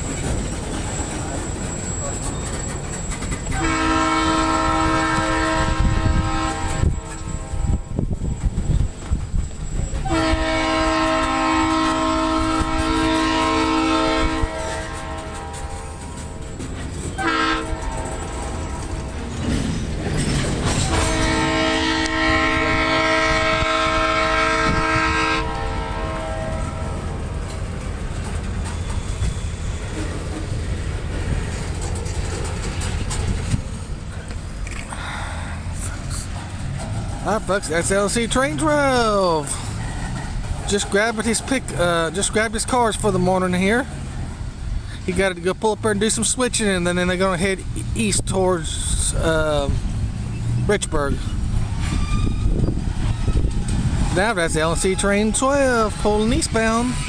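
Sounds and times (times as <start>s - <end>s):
diesel freight train rumbling: 0.0s - 57.0s
locomotive horn chord: 3.5s - 8.0s, 10.0s - 19.4s, 20.8s - 27.2s.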